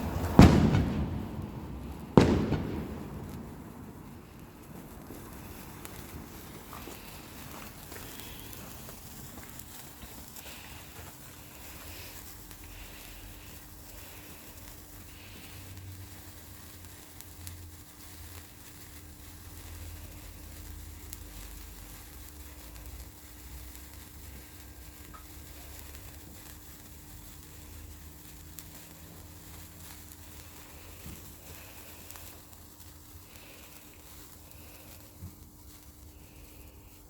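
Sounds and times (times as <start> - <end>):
low rumble: 0.0 - 8.6
sparkler fizzing and crackling: 0.0 - 37.0.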